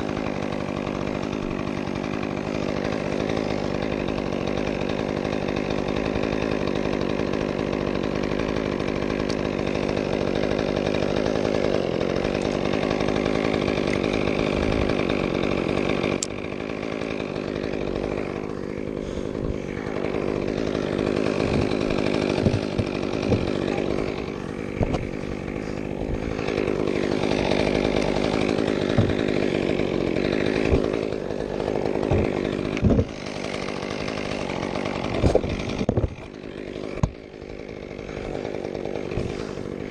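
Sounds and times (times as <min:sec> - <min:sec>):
chainsaw cutting wood: 0:00.0 - 0:39.9
sharp knocks: 0:22.3 - 0:23.6, 0:24.7 - 0:25.1, 0:28.9 - 0:29.3, 0:32.0 - 0:33.2.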